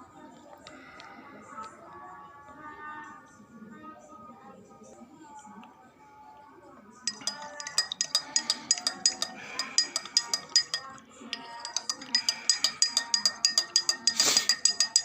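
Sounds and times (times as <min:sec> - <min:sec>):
metal spoon clinking in glass: 0:07.1 - 0:15.0.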